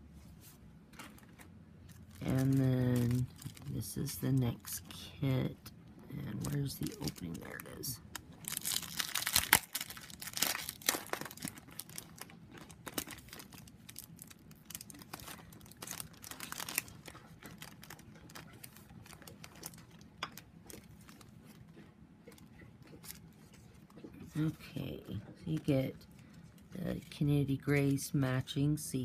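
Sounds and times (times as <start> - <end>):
cellophane torn and crinkled: 1.1 - 4.8, 6.4 - 21.7.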